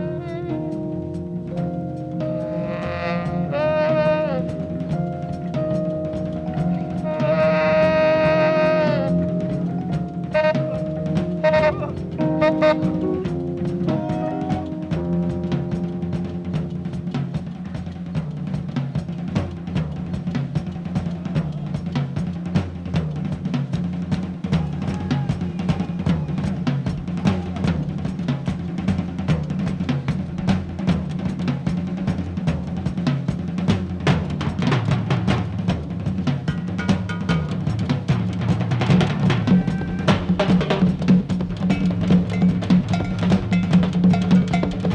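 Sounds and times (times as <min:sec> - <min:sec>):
bass line: 0:00.0 - 0:18.3
drum kit: 0:00.0 - 0:44.9
jazz fusion band playing: 0:00.0 - 0:44.9.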